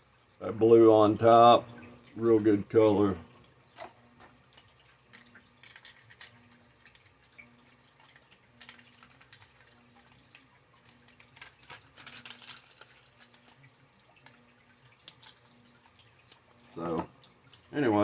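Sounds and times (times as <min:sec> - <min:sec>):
low steady hum: 0:00.0 - 0:18.0
packaging clicks and rustles: 0:05.1 - 0:07.1, 0:08.2 - 0:16.9.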